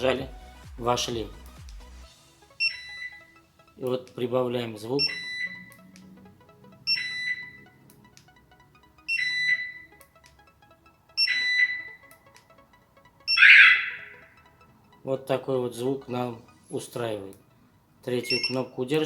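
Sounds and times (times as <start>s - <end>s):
car alarm chirps: 2.5s - 3.5s, 5.0s - 5.9s, 6.8s - 7.8s, 9.0s - 10.0s, 11.1s - 12.2s, 13.2s - 14.7s, 18.2s - 18.6s.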